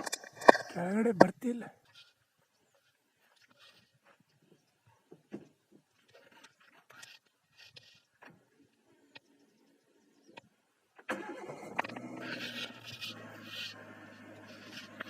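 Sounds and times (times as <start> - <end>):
car engine starting and running: 11.0 - 15.0.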